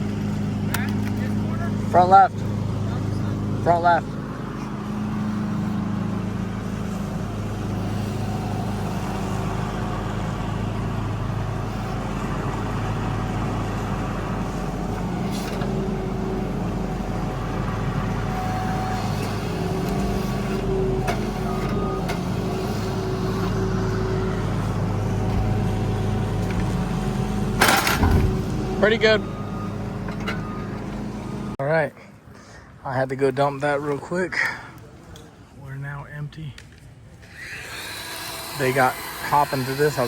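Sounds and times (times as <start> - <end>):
truck engine running: 0.0 - 31.7.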